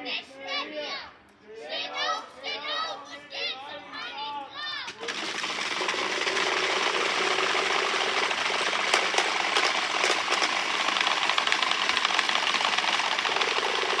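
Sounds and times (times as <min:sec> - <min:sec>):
sharp wooden cracks: 0:04.9 - 0:14.0
wooden rattles clattering: 0:04.9 - 0:14.0.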